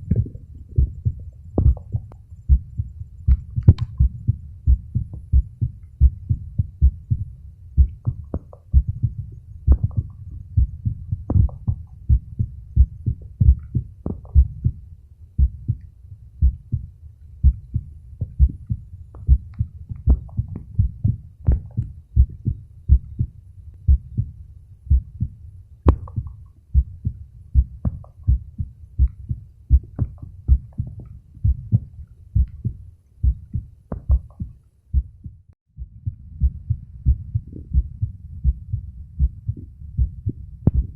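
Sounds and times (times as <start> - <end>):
heartbeat thumps: 0.0 - 14.8, 15.4 - 40.9
sharp clicks: 3.3 - 4.0.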